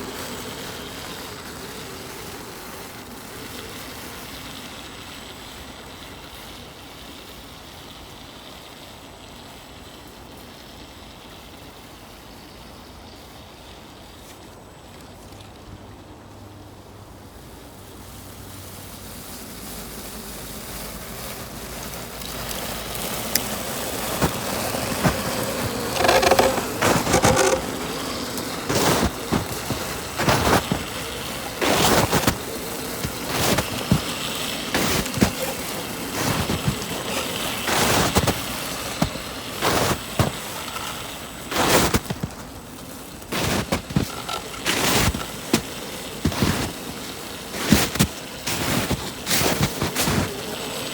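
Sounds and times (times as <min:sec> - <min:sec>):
snow crunching: 0:17.9 - 0:50.9.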